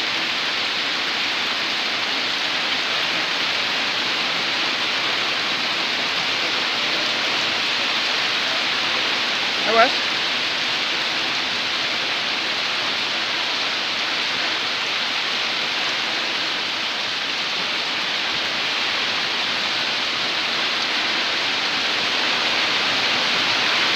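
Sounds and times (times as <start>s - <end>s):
heavy rain pouring: 0.0s - 23.9s.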